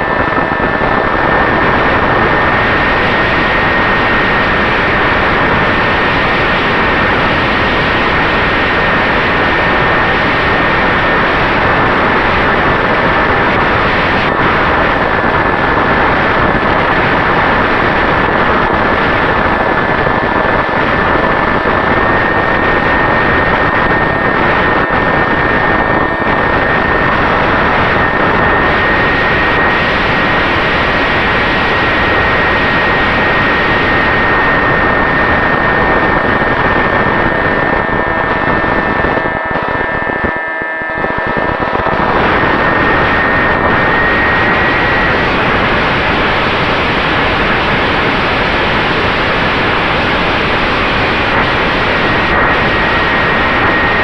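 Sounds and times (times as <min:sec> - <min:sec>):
wind noise: 0:00.0 - 0:54.0
electric motor whine: 0:31.4 - 0:47.6, 0:50.9 - 0:54.0.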